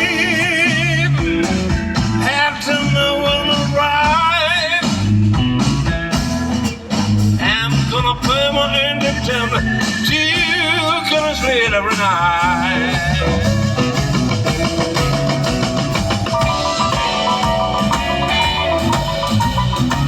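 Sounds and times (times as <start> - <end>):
person singing: 0.0 - 1.5, 7.4 - 13.9
rock band playing: 0.0 - 20.0.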